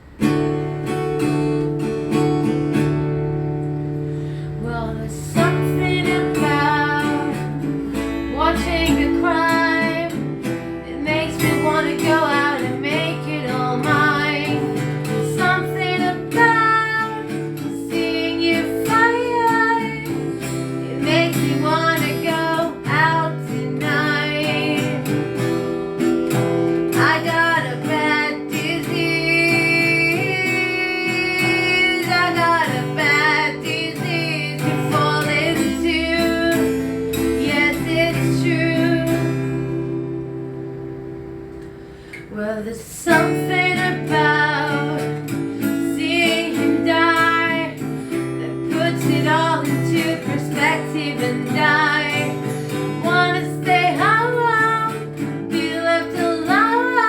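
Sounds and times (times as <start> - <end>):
acoustic guitar strumming: 0.0 - 57.0.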